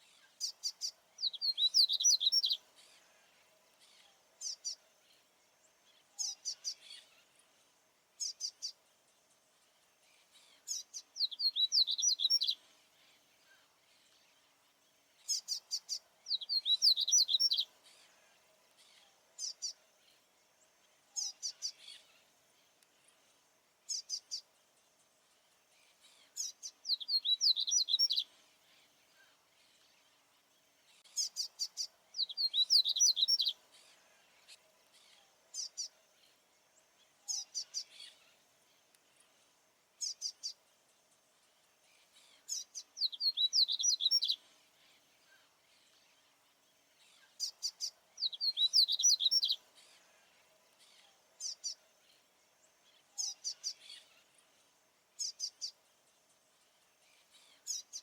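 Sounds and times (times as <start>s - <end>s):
seedeater bird singing: 0.2s - 2.7s, 10.4s - 12.7s, 15.2s - 18.0s, 26.2s - 28.3s, 31.0s - 33.6s, 42.2s - 46.0s, 47.1s - 50.0s, 52.8s - 54.3s.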